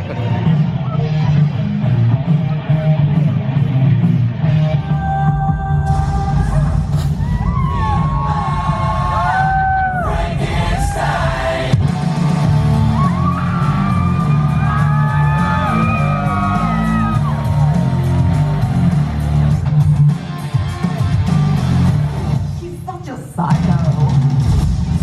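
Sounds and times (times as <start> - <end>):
loud music with heavy bass beat: 0.0 - 25.0
sung vocals: 4.5 - 7.0, 7.6 - 11.9.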